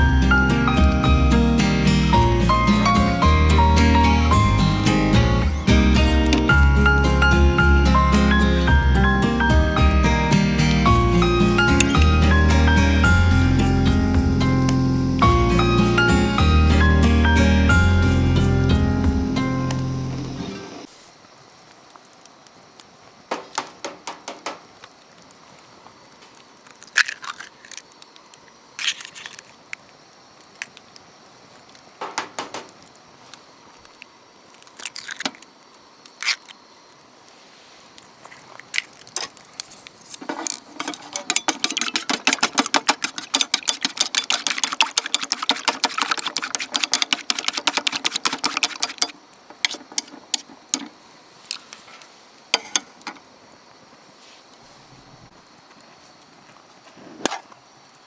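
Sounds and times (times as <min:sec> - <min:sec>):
cooking utensils knocking: 0:40.8 - 0:49.1
fast continuous clacking: 0:40.8 - 0:49.1.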